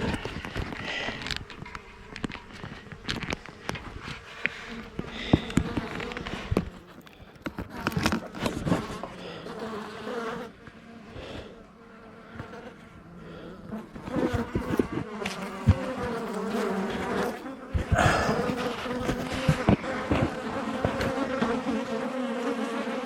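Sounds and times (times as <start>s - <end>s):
bees buzzing: 0.0s - 23.0s.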